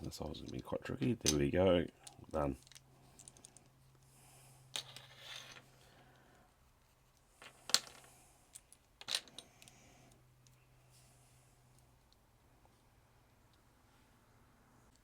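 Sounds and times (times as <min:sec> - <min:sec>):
plastic parts clicking and tapping: 0:02.0 - 0:03.7.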